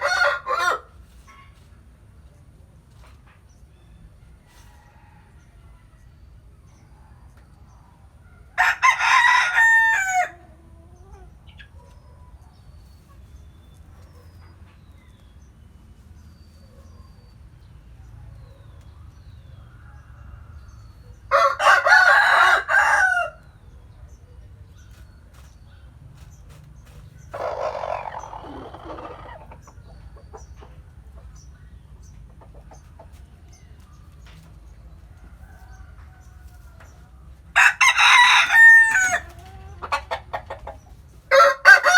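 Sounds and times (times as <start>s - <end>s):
roosters crowing: 0.0s - 1.2s, 4.3s - 6.0s, 8.4s - 11.4s, 19.5s - 23.6s, 27.3s - 29.7s, 35.0s - 41.9s.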